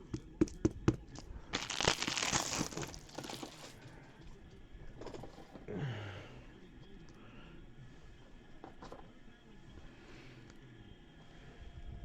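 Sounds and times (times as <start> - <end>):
plastic packaging crinkling: 1.5 - 3.8.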